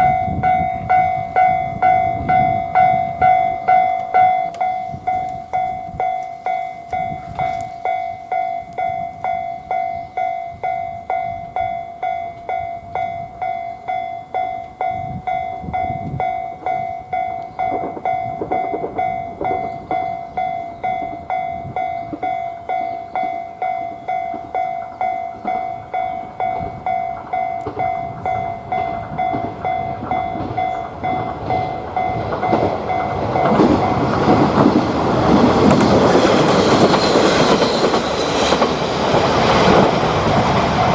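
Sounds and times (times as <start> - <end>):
diesel train rumble: 0.0 - 40.9
railroad crossing bell ringing: 0.0 - 40.9.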